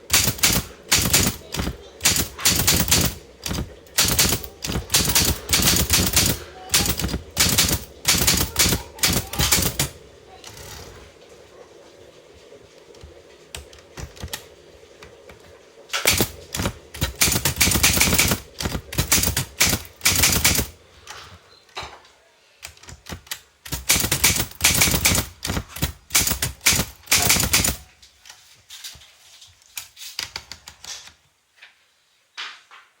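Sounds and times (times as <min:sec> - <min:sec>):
typewriter keys striking: 0:00.0 - 0:10.0, 0:13.6 - 0:14.4, 0:16.0 - 0:21.3, 0:22.6 - 0:27.9.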